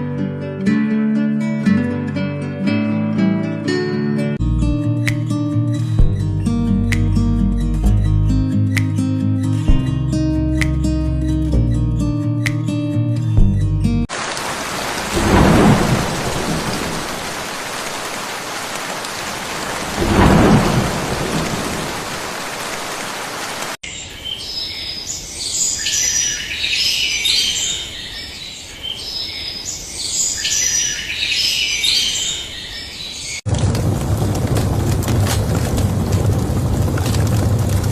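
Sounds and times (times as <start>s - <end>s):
heavy rain falling: 14.1s - 23.8s, 33.5s - 37.9s
low rolls of thunder: 14.6s - 23.1s, 33.5s - 37.9s
small birds chirping: 20.6s - 33.5s.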